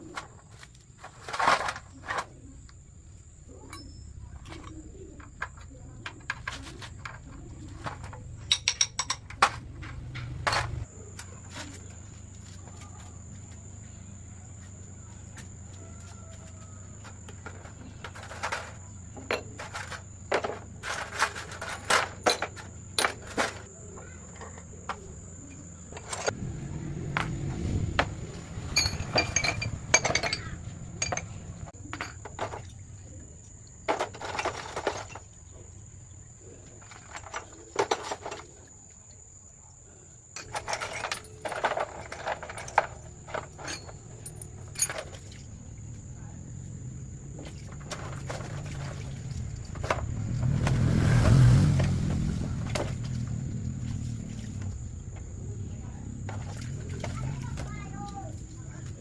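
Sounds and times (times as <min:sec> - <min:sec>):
metal tools clinking and scraping: 0:00.0 - 0:02.5, 0:03.5 - 0:11.9, 0:16.4 - 0:26.4, 0:28.0 - 0:35.4, 0:36.8 - 0:39.2, 0:40.3 - 0:45.5.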